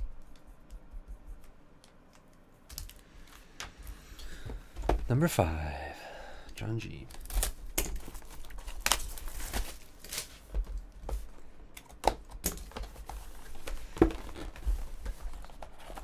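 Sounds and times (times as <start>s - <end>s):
packaging crinkling and tearing: 7.1s - 10.5s.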